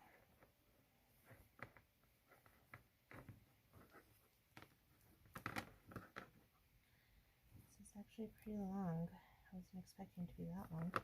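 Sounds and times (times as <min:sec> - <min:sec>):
garland rustling: 0:00.0 - 0:06.6.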